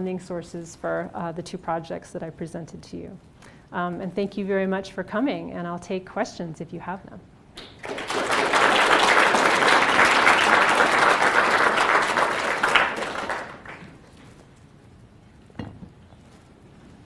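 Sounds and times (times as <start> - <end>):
audience applauding: 7.6 - 14.0.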